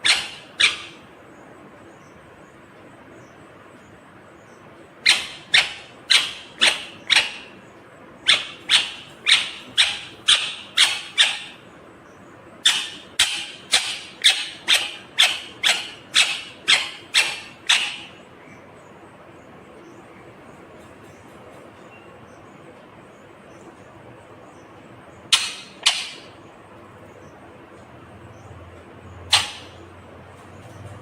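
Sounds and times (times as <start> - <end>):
parakeet shrill calls: 0.0 - 1.1, 5.0 - 7.6, 8.2 - 11.6, 12.6 - 18.2, 25.3 - 26.4, 29.2 - 29.9.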